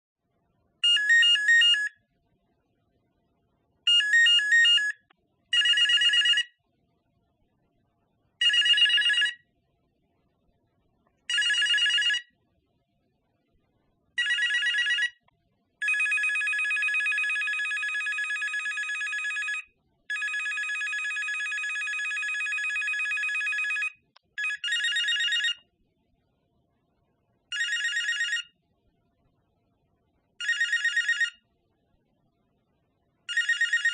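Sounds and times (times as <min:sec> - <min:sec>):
telephone ringing: 0:00.8 - 0:02.0, 0:03.9 - 0:06.6, 0:08.4 - 0:09.4, 0:11.3 - 0:12.3, 0:14.2 - 0:25.7, 0:27.5 - 0:28.6, 0:30.4 - 0:31.4, 0:33.3 - 0:33.9.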